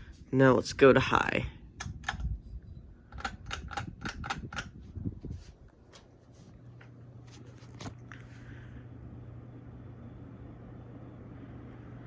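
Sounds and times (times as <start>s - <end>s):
ceiling fan motor humming: 0.0s - 12.0s
fan switch clicks: 1.8s - 4.8s.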